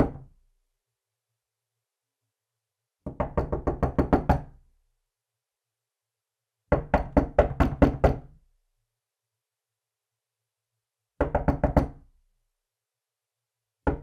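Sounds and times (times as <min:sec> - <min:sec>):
knocking on a door: 0:00.0 - 0:00.3, 0:03.0 - 0:04.6, 0:06.7 - 0:08.3, 0:11.2 - 0:12.0.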